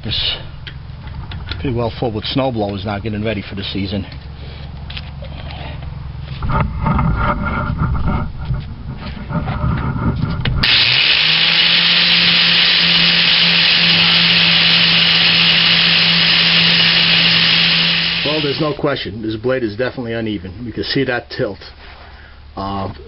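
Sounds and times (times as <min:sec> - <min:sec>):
low rumble: 0:05.8 - 0:10.7
grinder grinding steel blade: 0:10.6 - 0:18.8.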